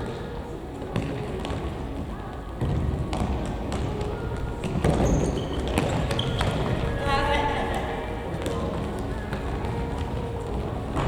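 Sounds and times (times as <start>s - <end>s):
ball kicks on sports hall floor: 0.9s - 1.7s, 2.6s - 6.9s
players running and shuffling: 2.6s - 11.0s.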